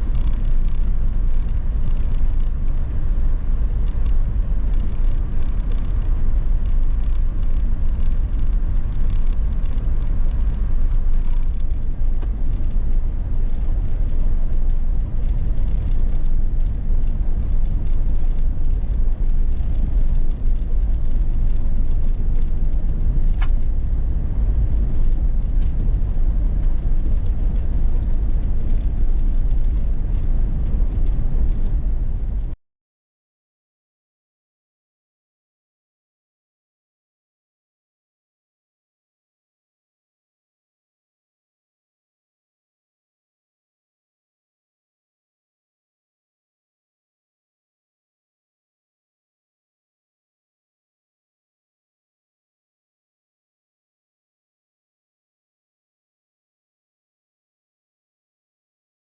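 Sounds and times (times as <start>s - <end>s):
small ticks and clicks: 0.0s - 32.6s
vehicle driving rumble: 0.0s - 32.6s.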